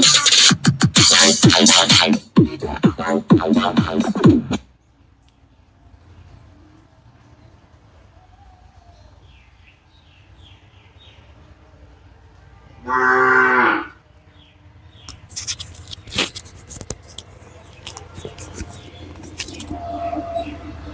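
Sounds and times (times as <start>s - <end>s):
drawn-out moo-like call: 12.8s - 14.0s
crackles and clicks: 15.1s - 20.2s.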